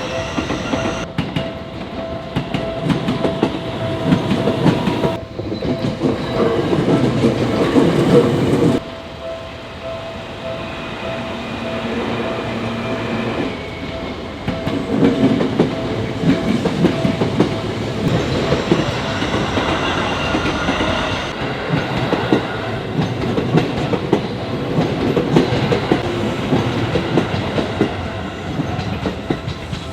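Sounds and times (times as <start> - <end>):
steady alarm tone: 0.0 - 1.1, 10.4 - 21.4.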